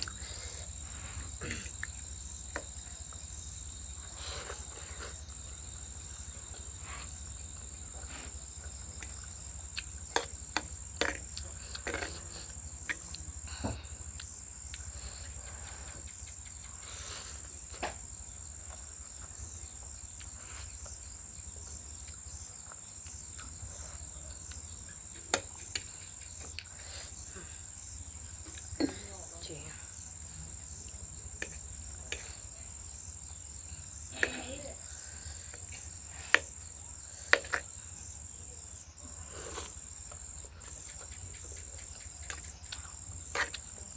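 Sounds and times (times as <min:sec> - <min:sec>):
high insect trill: 0:00.0 - 0:43.9
clicks and taps of eating noodles: 0:01.6 - 0:03.4, 0:04.5 - 0:21.0, 0:24.3 - 0:26.8, 0:30.7 - 0:37.9, 0:39.6 - 0:43.9.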